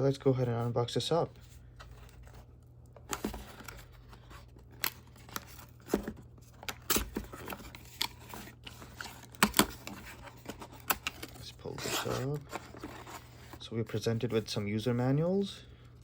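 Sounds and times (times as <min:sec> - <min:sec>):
cardboard box being opened: 0:03.1 - 0:13.6.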